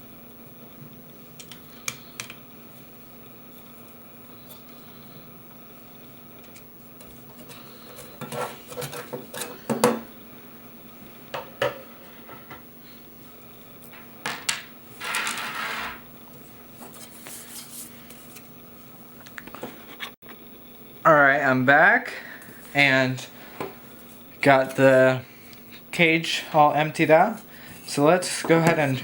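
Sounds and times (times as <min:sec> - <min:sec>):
metal scrape: 0:16.8 - 0:18.3.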